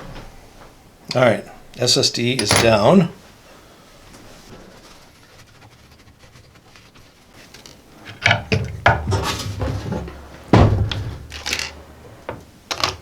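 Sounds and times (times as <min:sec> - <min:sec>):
small parts clicking and knocking: 0:02.4 - 0:03.0.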